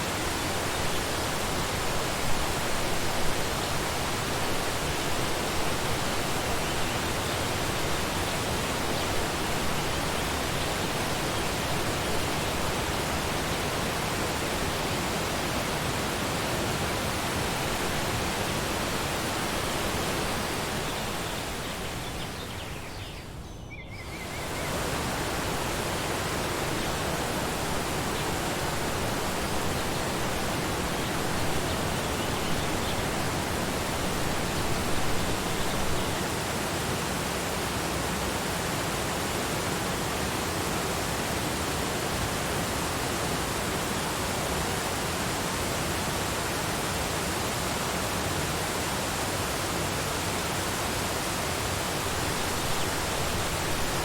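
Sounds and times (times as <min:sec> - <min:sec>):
waterfall roaring: 0:24.4 - 0:54.0.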